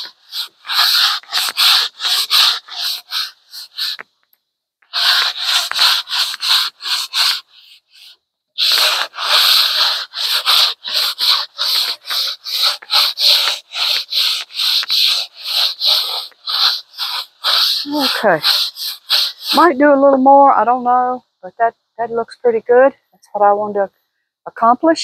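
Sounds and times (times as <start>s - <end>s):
sandpaper rubbing on wood: 0.0s - 4.0s, 4.8s - 20.4s.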